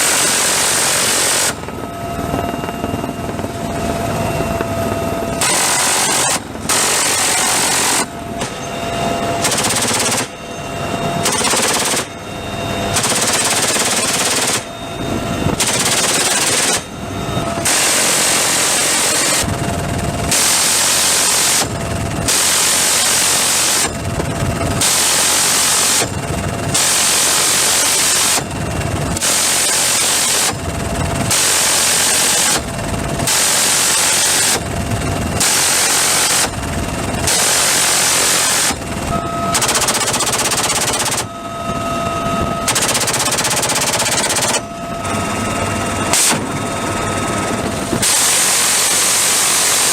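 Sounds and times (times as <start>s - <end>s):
steady quieter noise: 0.0s - 26.6s, 34.8s - 49.7s
minigun firing bursts: 2.6s - 8.6s, 9.4s - 10.4s, 11.2s - 12.2s, 12.9s - 14.8s, 15.6s - 16.9s, 35.4s - 41.4s, 42.6s - 49.9s.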